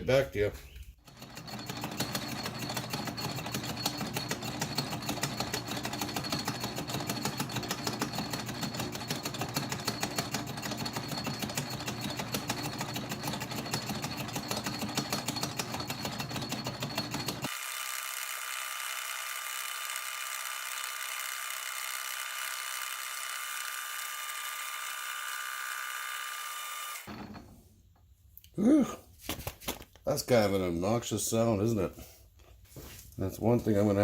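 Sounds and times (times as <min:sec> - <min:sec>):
metal lathe gears clattering: 0:01.1 - 0:17.5.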